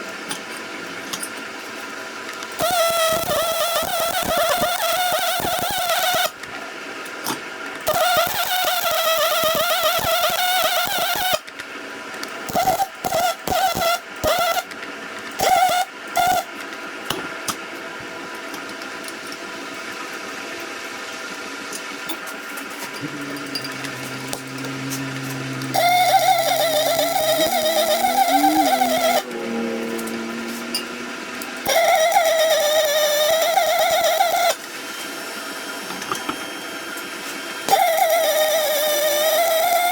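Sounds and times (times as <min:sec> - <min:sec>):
electric welding arc buzzing: 0:02.6 - 0:06.4, 0:07.8 - 0:11.5, 0:12.4 - 0:14.7, 0:15.4 - 0:16.6, 0:22.4 - 0:39.9
faint steady hum: 0:22.5 - 0:34.6.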